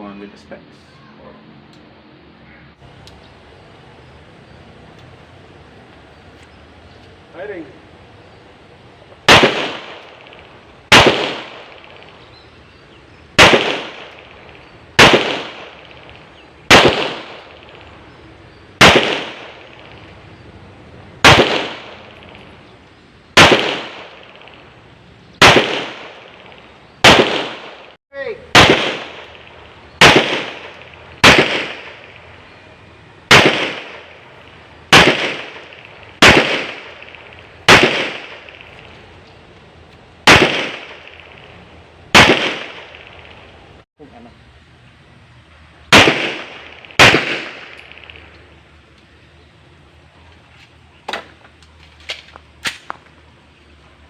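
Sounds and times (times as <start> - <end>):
pistol shots echoing: 9.2 - 12.5, 13.4 - 18.2, 18.8 - 20.1, 21.2 - 22.5, 23.3 - 24.8, 25.4 - 32.4, 33.2 - 39.0, 40.2 - 43.5, 45.9 - 48.4.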